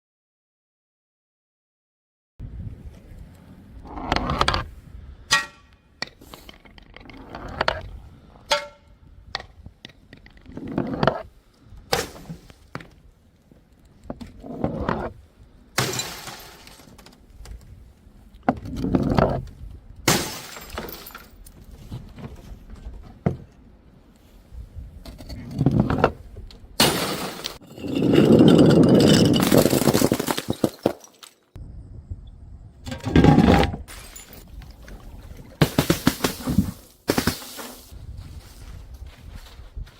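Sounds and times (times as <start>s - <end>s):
glass shattering: 15.8s - 16.9s, 20.1s - 21.3s, 26.8s - 31.5s, 33.9s - 34.5s, 35.6s - 37.9s
glass bottles breaking on stairs: 15.8s - 17.0s, 20.1s - 21.4s, 26.8s - 31.5s, 33.9s - 34.5s, 35.6s - 37.9s.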